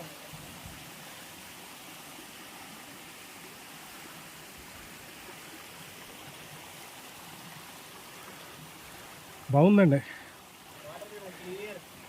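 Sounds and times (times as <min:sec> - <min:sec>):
stream water rushing over waterfall: 0:00.0 - 0:12.0.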